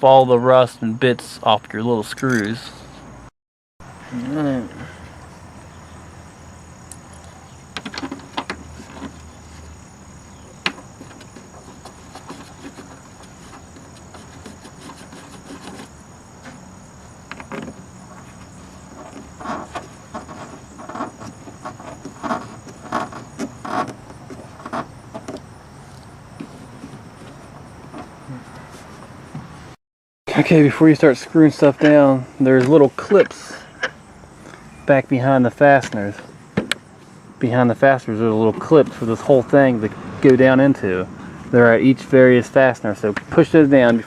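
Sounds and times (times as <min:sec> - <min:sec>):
wire brush scrubbing metal: 0:10.6 - 0:16.6.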